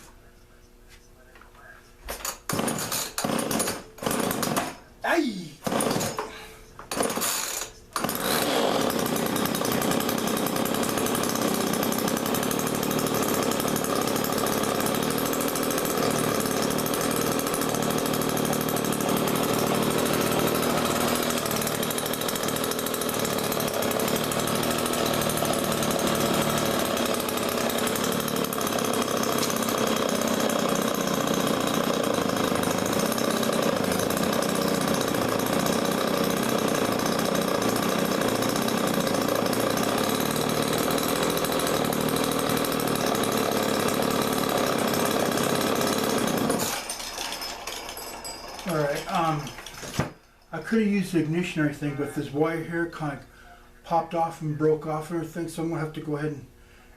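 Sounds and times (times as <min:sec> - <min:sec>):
chainsaw engine running: 0:02.5 - 0:06.2, 0:06.9 - 0:50.7.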